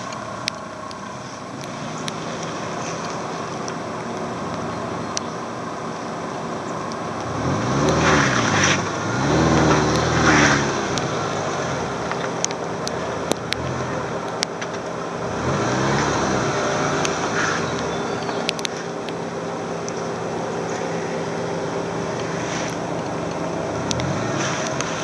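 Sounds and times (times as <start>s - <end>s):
car engine revving: 0.0s - 25.0s
steady engine hum: 0.0s - 25.0s
sharp clicks and knocks: 8.6s - 15.1s, 22.0s - 25.0s.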